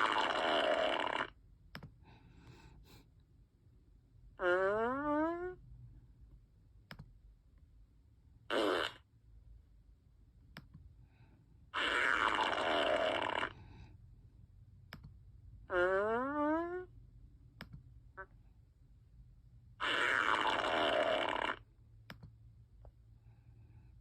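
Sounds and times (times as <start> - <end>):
imitated fart noises: 0.0 - 1.4, 4.4 - 5.6, 8.5 - 9.1, 11.7 - 13.6, 15.7 - 16.9, 19.8 - 21.7.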